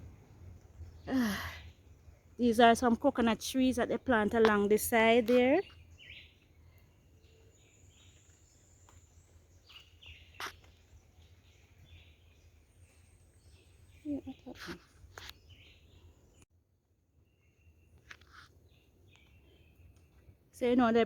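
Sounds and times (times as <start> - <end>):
birds chirping: 0.0 - 16.4.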